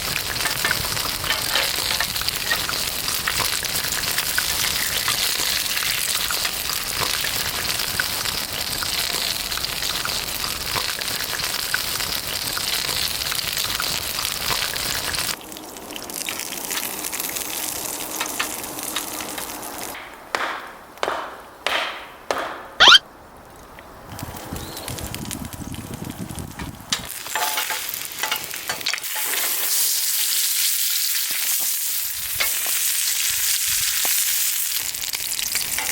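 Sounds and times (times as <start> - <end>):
food frying and sizzling: 0.0 - 20.0, 24.1 - 35.9
brief squeak: 22.8 - 23.0
short sharp sounds: 22.8 - 23.0.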